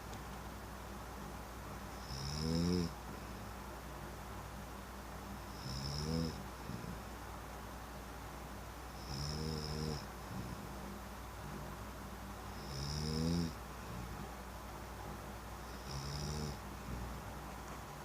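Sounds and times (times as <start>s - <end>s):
man snoring with whistle: 2.0s - 3.0s, 5.6s - 7.0s, 9.0s - 10.6s, 12.6s - 13.6s, 15.7s - 17.1s.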